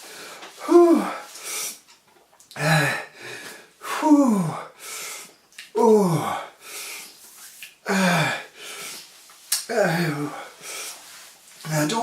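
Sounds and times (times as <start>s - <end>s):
man breathing heavily: 0.0s - 1.9s, 2.5s - 7.2s, 7.8s - 11.4s
man moaning in pain: 0.6s - 1.2s, 3.9s - 4.7s, 5.8s - 6.5s, 9.7s - 10.4s.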